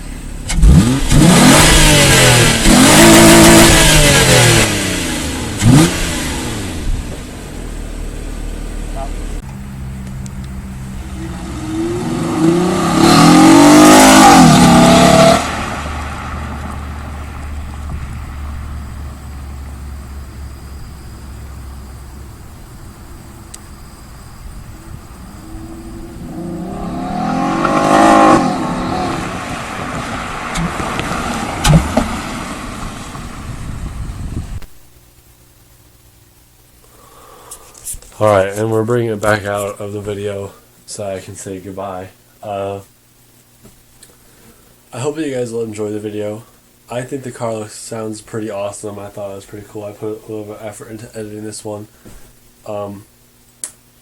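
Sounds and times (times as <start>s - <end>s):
car engine revving: 0.2s - 34.2s
brief sharp click: 53.6s - 53.8s.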